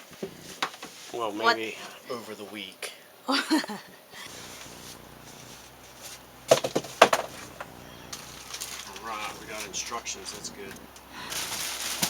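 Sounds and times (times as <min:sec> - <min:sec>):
faint steady hum: 0:00.0 - 0:12.0
packaging knocks and clatters: 0:06.5 - 0:09.8, 0:11.3 - 0:12.0.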